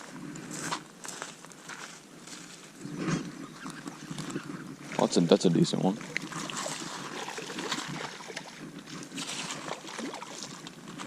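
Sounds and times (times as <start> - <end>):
creek water splashing: 3.6 - 11.0.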